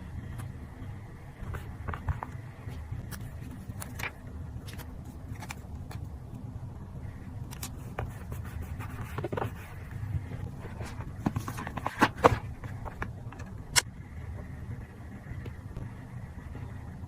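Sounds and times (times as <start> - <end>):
steady low rumble: 0.0 - 17.0
paper rustling: 1.4 - 6.1, 7.5 - 13.5.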